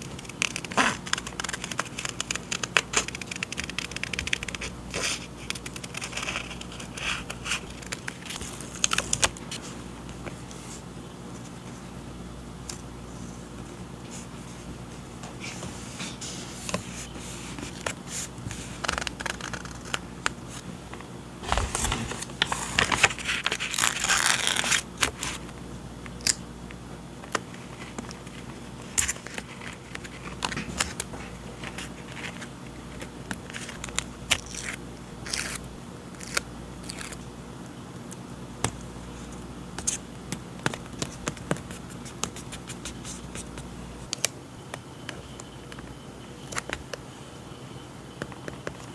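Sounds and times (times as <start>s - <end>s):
paper scraping and rustling: 0.0s - 9.7s, 21.4s - 25.5s.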